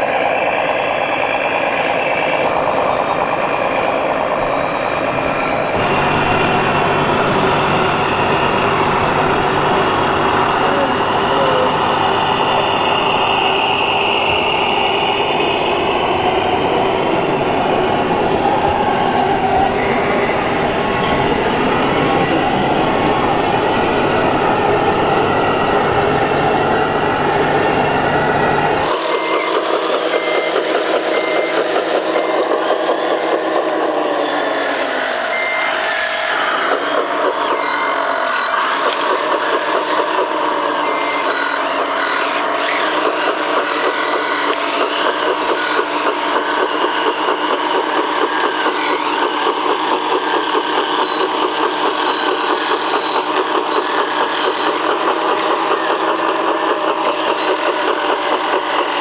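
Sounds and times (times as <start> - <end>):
electric motors whining: 0.0 - 59.0
reversing beeper pips: 2.4 - 32.8.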